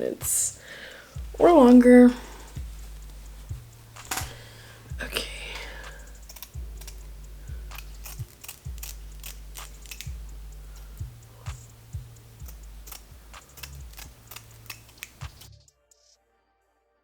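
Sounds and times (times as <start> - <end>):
low hum: 0.0 - 15.5
objects being handled clicking: 2.3 - 15.5.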